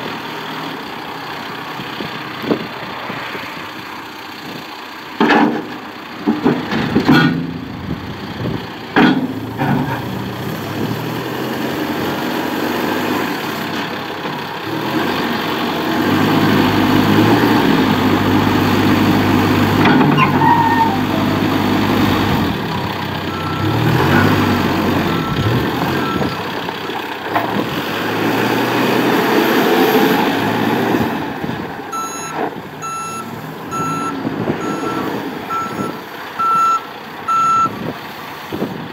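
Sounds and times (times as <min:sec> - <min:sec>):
backhoe diesel engine working: 0:00.0 - 0:38.9
reversing alarm beeps: 0:25.1 - 0:26.4, 0:31.9 - 0:37.7.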